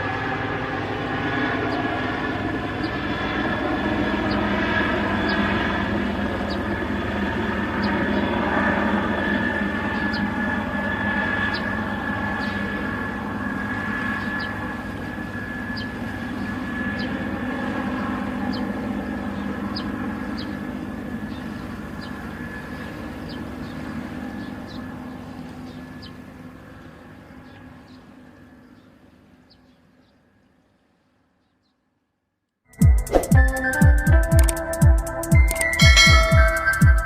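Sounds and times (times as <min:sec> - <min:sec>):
helicopter droning: 0:00.0 - 0:29.3, 0:32.7 - 0:37.0
faint regular ticks: 0:34.3 - 0:35.8.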